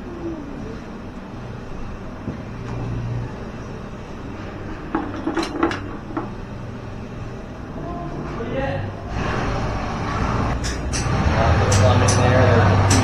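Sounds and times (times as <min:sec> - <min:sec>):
hard objects knocking and clattering: 0:04.9 - 0:06.4.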